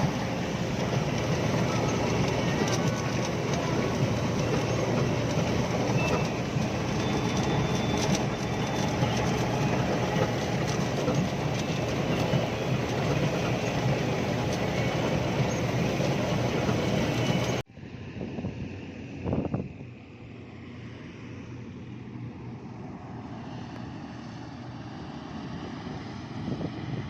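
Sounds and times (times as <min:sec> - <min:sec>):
harvesting machinery running: 0:00.0 - 0:17.6
light rattling ticks: 0:00.0 - 0:17.6.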